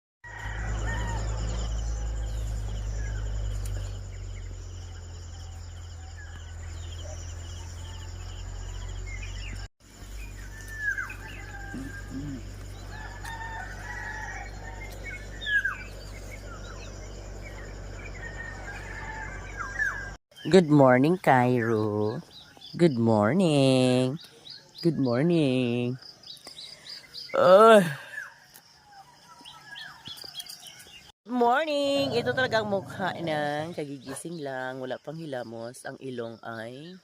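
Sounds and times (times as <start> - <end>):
roosters crowing: 0.2 - 4.0, 10.3 - 20.2
insects trilling: 0.2 - 37.0
low rumble: 11.1 - 20.2, 31.6 - 33.8.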